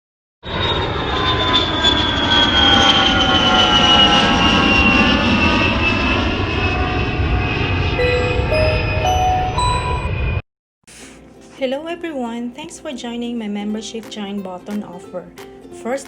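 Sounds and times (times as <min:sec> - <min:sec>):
jet engines rushing and whining: 0:00.4 - 0:10.4.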